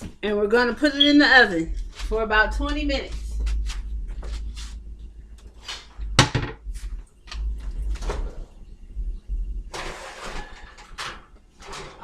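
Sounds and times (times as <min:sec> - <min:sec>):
baking tray knocks and clunks: 0:06.2 - 0:06.6
oven door opening: 0:07.2 - 0:08.6, 0:09.7 - 0:12.0.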